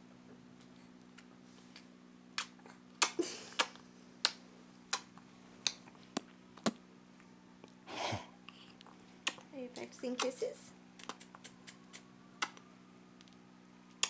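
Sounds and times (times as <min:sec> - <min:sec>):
steady low hum: 0:00.0 - 0:14.0
kiss-like mouth clicks: 0:02.4 - 0:05.8, 0:09.2 - 0:09.4, 0:11.0 - 0:12.6.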